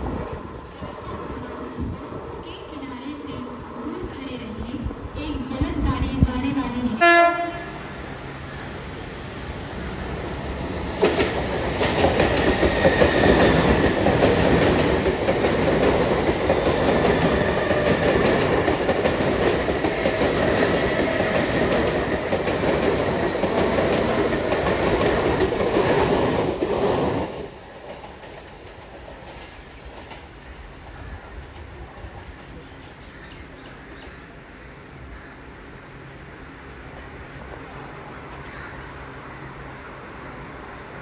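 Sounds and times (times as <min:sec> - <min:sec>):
train wheels clattering over rail joints: 0:10.8 - 0:33.0.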